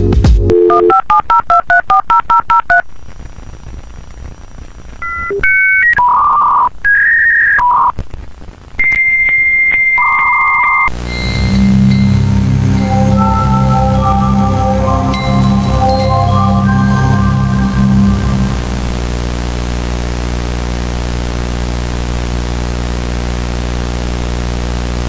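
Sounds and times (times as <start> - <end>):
electronic phone line beeps: 8.8 - 19.0
long steady high tone: 10.9 - 20.0
harsh low tone: 10.9 - 20.3.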